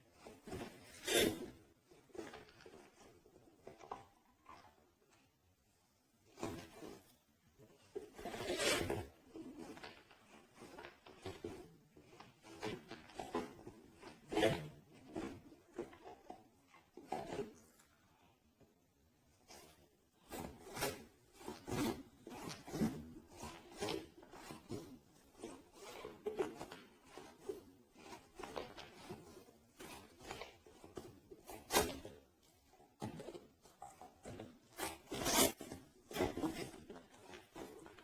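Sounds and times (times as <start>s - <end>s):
rubbing and scratching strokes: 19.4s - 38.0s.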